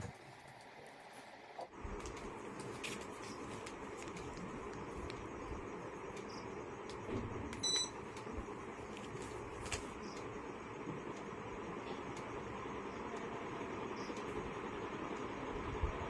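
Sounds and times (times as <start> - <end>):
ceiling fan running: 0.0 - 16.0
high electronic beep: 7.6 - 8.0.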